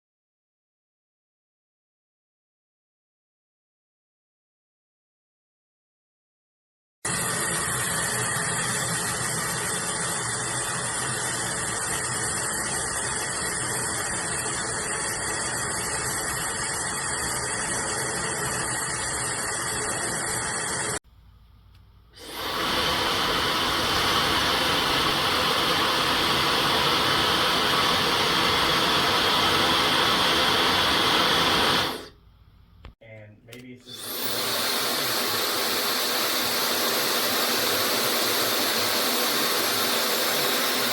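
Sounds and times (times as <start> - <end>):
hair dryer blowing: 7.1 - 21.0, 22.2 - 32.2, 33.9 - 40.9.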